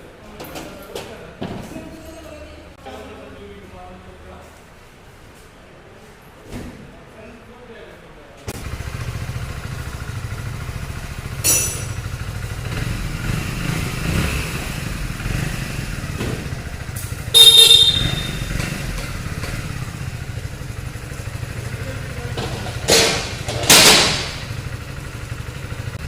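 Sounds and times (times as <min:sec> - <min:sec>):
motorcycle engine running: 0:08.6 - 0:26.0
horn: 0:17.3 - 0:18.4.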